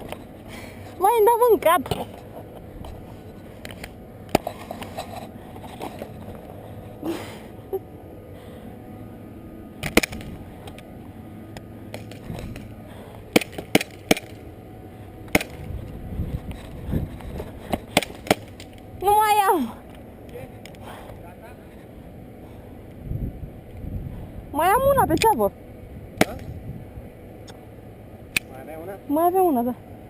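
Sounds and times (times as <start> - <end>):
sharp clicks and cracks: 13.3 - 14.4, 28.3 - 28.6.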